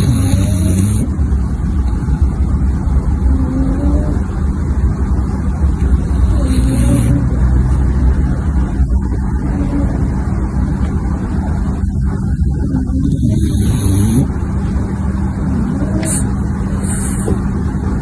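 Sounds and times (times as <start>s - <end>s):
dog snoring: 0.0s - 1.1s, 6.0s - 7.4s, 12.7s - 14.3s, 15.6s - 17.3s.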